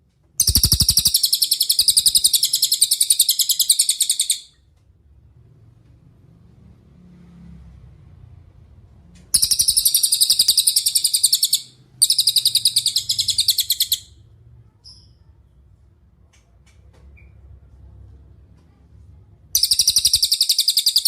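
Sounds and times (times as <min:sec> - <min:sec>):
bird trilling: 0:00.4 - 0:04.5, 0:09.3 - 0:14.2, 0:19.6 - 0:21.0.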